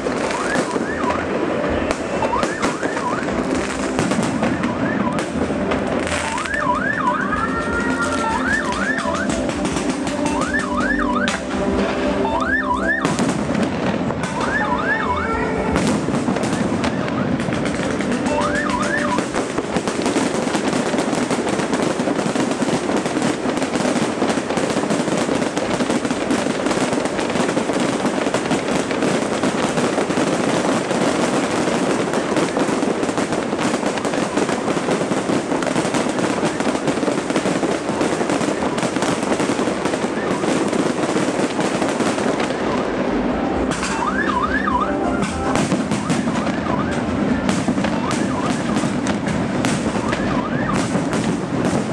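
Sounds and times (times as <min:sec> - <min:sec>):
fireworks crackling and popping: 0:00.0 - 0:51.9
wavering fireworks whistles: 0:00.0 - 0:51.9.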